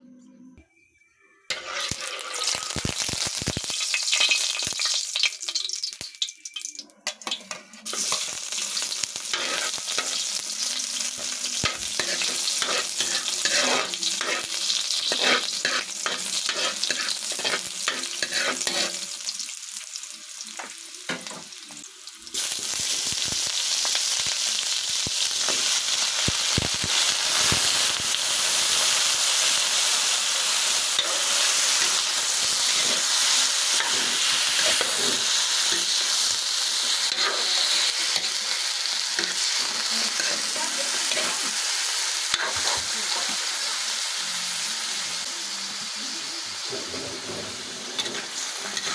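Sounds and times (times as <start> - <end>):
food sizzling in a pan: 1.5 - 48.9
utensil scraping a pan: 12.0 - 19.0.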